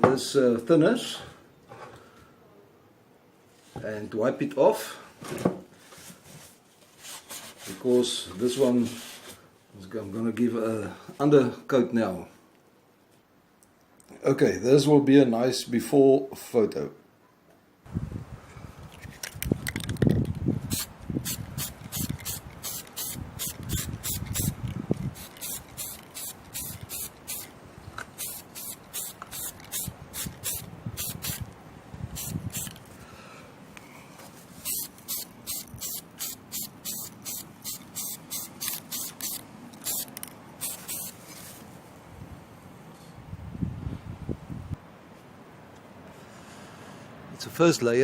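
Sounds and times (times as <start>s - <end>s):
spray can ball rattling: 19.4s - 27.5s, 28.2s - 31.4s, 32.2s - 32.8s, 34.6s - 41.2s.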